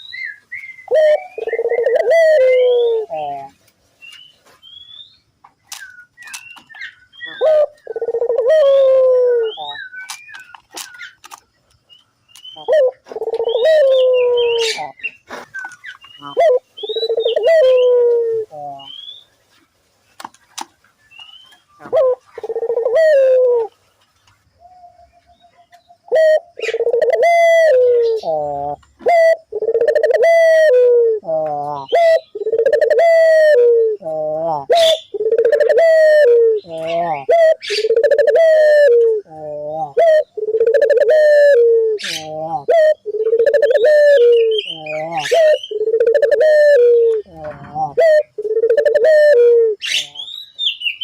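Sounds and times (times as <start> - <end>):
dove cooing: 0.7 - 3.6, 7.2 - 10.0, 12.6 - 19.0, 21.8 - 23.7, 26.0 - 50.4.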